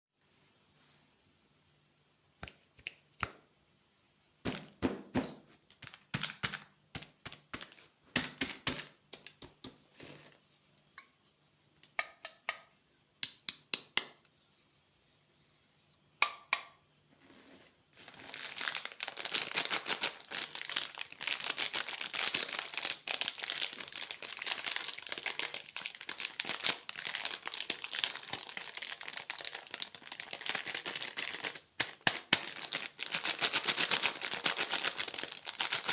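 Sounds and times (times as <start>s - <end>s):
candy wrappers crinkling: 5.6s - 9.4s, 17.9s - 35.9s
wrappers tearing open: 18.0s - 35.9s.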